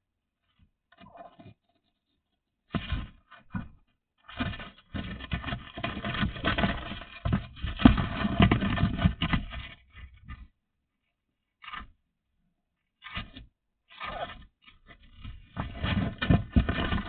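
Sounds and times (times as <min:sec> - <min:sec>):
rustling and scraping: 0:02.7 - 0:10.6, 0:11.6 - 0:12.0, 0:12.9 - 0:17.0.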